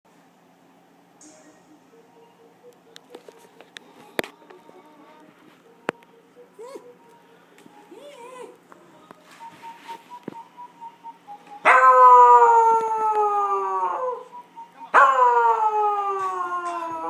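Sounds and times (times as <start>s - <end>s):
dog howling: 11.6s - 14.3s, 14.9s - 17.0s.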